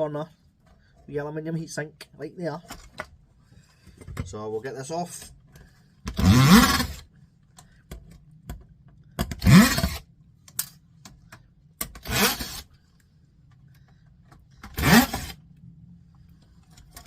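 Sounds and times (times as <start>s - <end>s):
handheld power tool whirring: 6.0s - 7.1s, 9.2s - 10.1s, 11.8s - 12.7s, 14.6s - 15.4s.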